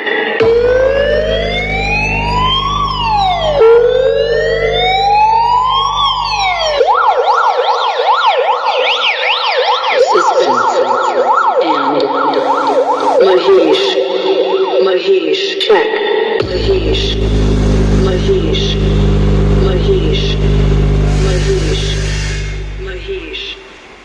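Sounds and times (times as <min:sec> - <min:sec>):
low bass drone: 0:00.4 - 0:07.0, 0:16.4 - 0:24.0
electronic siren wailing: 0:00.4 - 0:15.2, 0:16.4 - 0:24.0.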